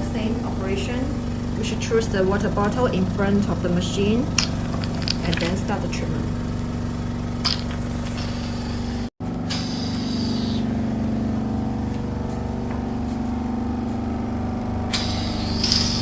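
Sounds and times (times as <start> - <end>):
pump humming: 0.0 - 16.0
hissing air: 6.4 - 11.2, 14.8 - 16.0.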